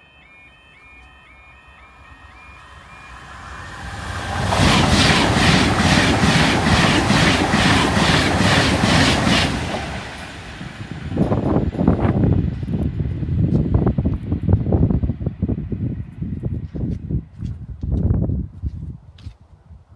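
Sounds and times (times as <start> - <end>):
train passing at speed: 0.0 - 16.3
wind buffeting microphone: 3.3 - 19.9
train wheels clattering: 3.7 - 12.8.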